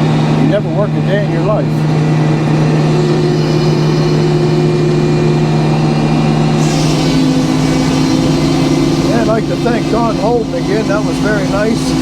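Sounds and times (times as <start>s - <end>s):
sawmill engine running: 0.0s - 12.0s
high hiss: 2.6s - 12.0s.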